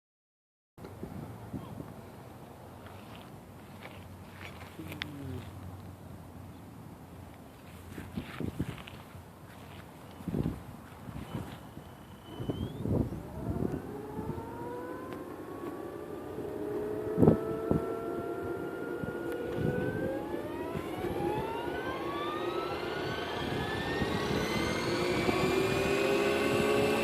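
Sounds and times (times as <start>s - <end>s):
model helicopter whine: 11.1s - 27.0s.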